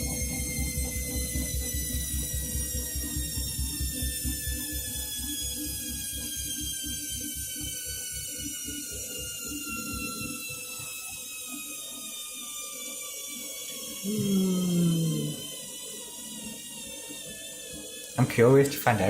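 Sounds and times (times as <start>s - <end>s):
washing machine motor winding down: 0.0s - 19.0s
loud low hum: 14.1s - 15.5s.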